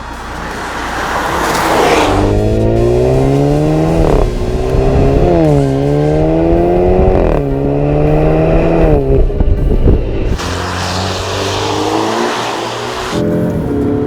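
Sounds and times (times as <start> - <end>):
car engine accelerating: 0.0 - 14.0.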